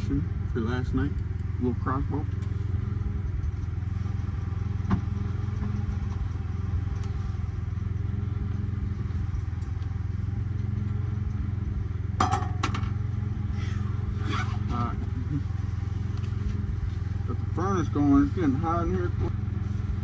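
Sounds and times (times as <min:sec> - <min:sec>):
furnace humming: 0:00.0 - 0:20.0
sharp knocks clattering: 0:12.2 - 0:13.0.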